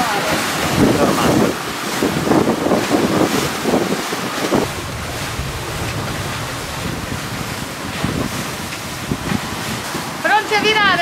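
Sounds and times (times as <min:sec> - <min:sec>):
rushing sea water: 0:00.0 - 0:11.0
wind buffeting microphone: 0:00.5 - 0:11.0.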